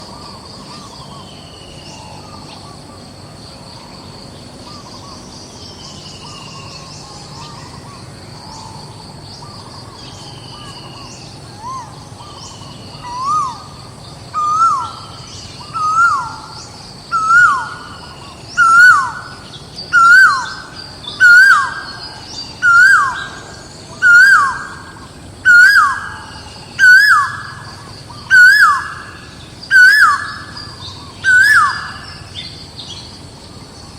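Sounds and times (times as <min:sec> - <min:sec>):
bird calling rising in pitch: 0:10.5 - 0:32.6.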